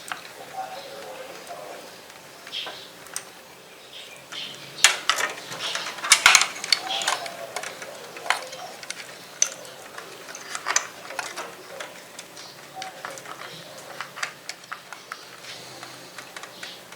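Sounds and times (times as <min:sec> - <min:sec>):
plastic and metal clicks and rattles: 0:04.3 - 0:16.9.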